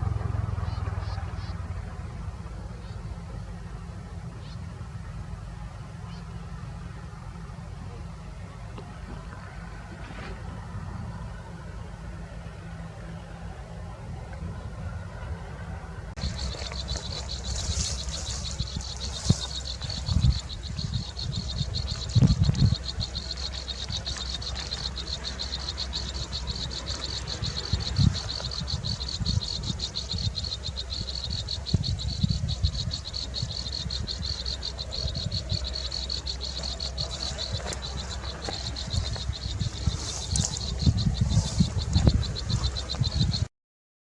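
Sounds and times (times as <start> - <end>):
insects trilling: 16.2 - 43.5.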